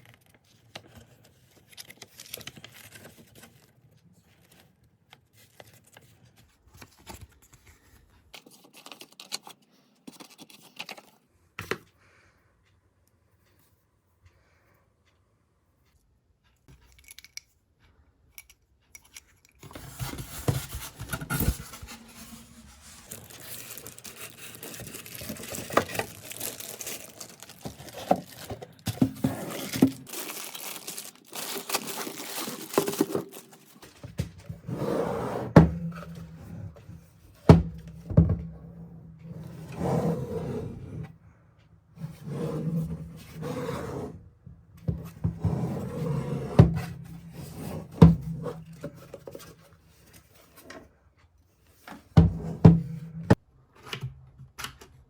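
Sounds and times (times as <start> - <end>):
cardboard tearing and crinkling: 19.8 - 34.0.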